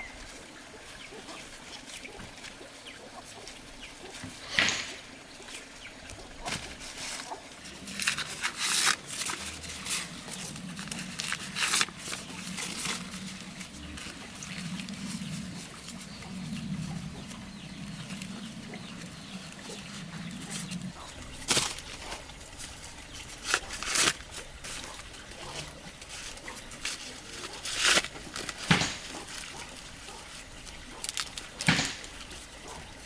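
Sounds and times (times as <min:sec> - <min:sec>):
chickens clucking: 0:12.2 - 0:33.0
sharp knocks and clicks: 0:28.5 - 0:29.4, 0:31.6 - 0:32.3.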